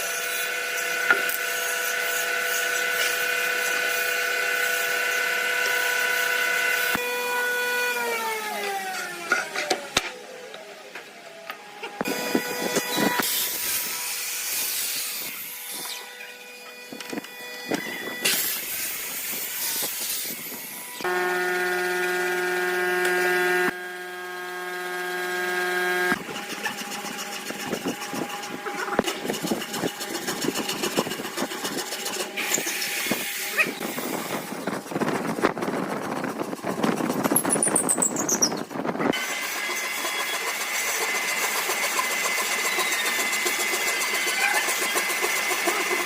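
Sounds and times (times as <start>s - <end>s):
cutting or sanding wood: 0.0s - 9.8s, 12.0s - 46.0s
motor whining: 0.6s - 31.5s.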